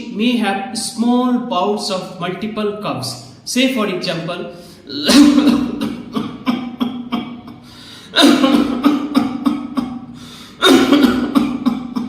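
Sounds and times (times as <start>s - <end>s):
man coughing: 4.9s - 12.0s.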